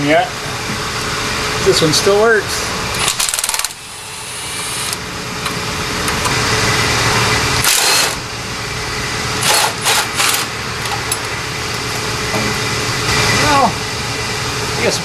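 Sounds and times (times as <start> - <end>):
impact wrench hammering: 9.4 - 11.9.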